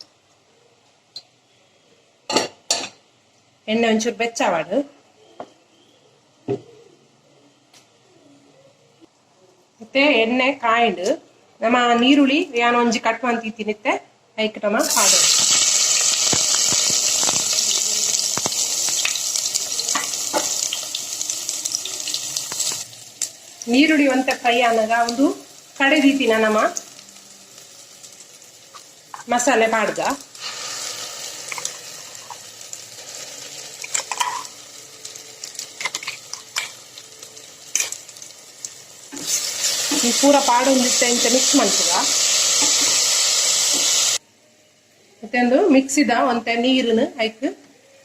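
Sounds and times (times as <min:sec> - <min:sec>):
onions sizzling in hot oil: 0:14.8 - 0:44.2
metal spoon tapping and scraping: 0:35.8 - 0:36.8.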